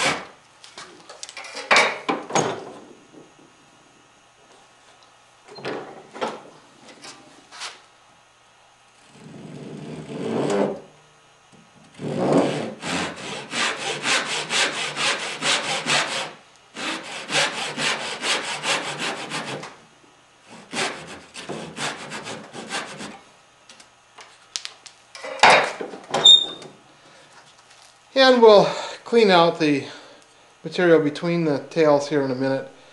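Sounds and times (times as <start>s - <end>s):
hand saw cutting wood: 0.0s - 0.4s, 9.1s - 10.8s, 12.0s - 19.8s, 20.4s - 23.2s.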